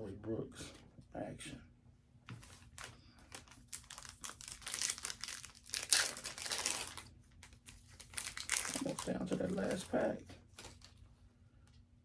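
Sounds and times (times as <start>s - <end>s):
foil wrapper crinkling and tearing: 2.4s - 11.0s.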